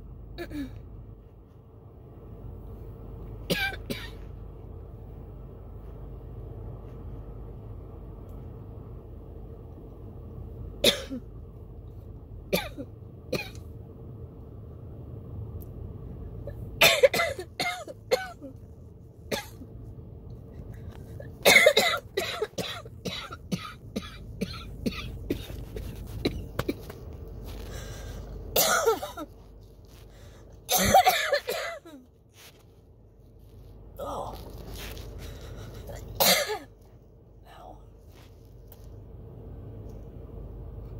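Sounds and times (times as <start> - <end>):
person coughing hard: 3.5 - 4.2, 10.8 - 11.2, 12.5 - 13.6, 16.8 - 18.6, 19.3 - 19.6, 21.4 - 26.9, 28.6 - 29.3, 30.7 - 32.1, 35.8 - 36.7.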